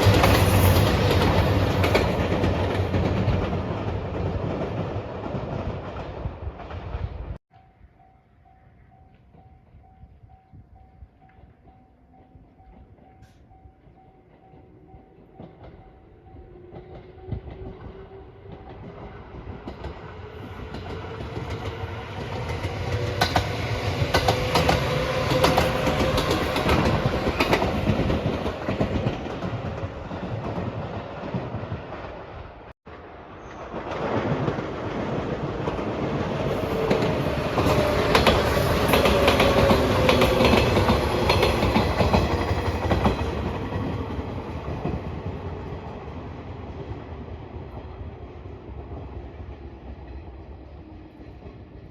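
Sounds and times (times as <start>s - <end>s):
train wheels clacking over rail joints: 0.0s - 6.8s, 16.6s - 31.6s, 35.6s - 45.1s.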